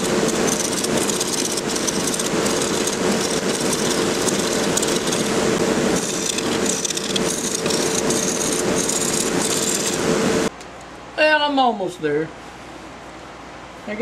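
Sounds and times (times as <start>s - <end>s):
turning tool cutting wood: 0.0s - 10.4s
wood lathe motor hum: 0.0s - 10.5s.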